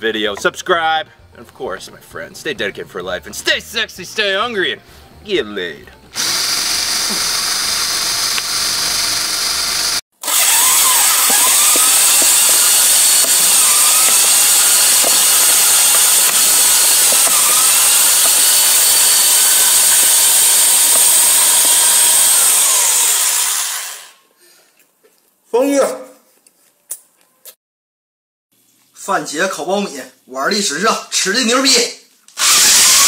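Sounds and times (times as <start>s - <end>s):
electric drill running: 6.1s - 24.2s, 32.4s - 33.0s.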